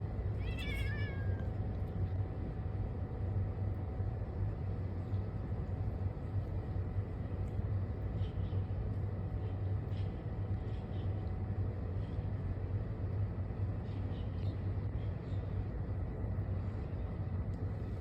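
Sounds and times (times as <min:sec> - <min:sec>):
low background rumble: 0:00.0 - 0:18.0
cat meowing: 0:00.4 - 0:01.4.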